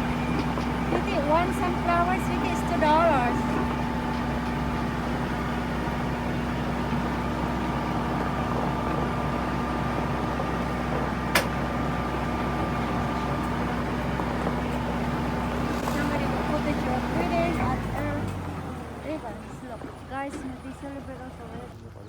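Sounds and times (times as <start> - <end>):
engine droning: 0.0 - 22.0.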